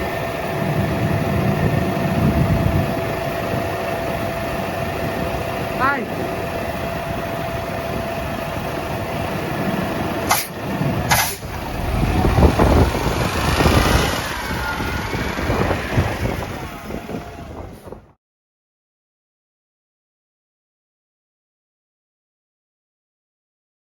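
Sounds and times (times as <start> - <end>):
diesel truck engine running: 0.0 - 18.1
sharp clicks: 10.3 - 11.5.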